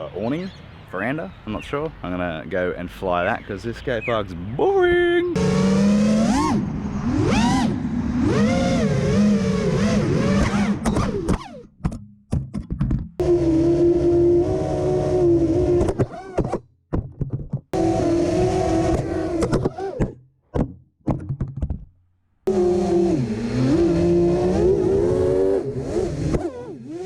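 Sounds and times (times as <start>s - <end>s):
quadcopter motors whining: 5.3s - 11.6s, 13.2s - 16.4s, 17.8s - 20.0s, 22.5s - 27.0s.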